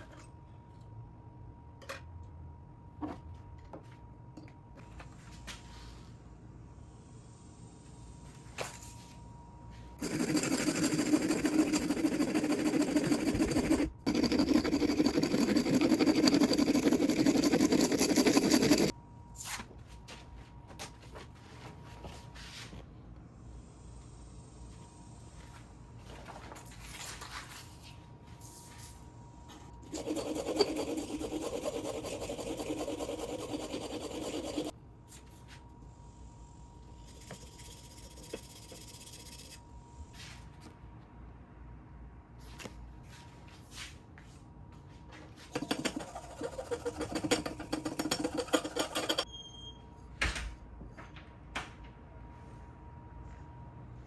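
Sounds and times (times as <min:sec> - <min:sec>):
plane blade scraping on abrasive: 0:10.0 - 0:18.9, 0:29.9 - 0:34.7, 0:45.6 - 0:49.2.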